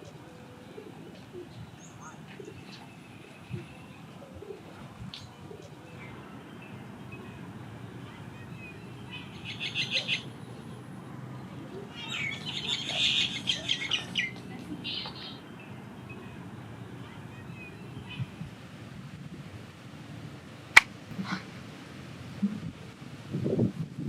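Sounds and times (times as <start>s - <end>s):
birds chirping: 0.0s - 18.8s
low background hiss: 0.0s - 24.0s.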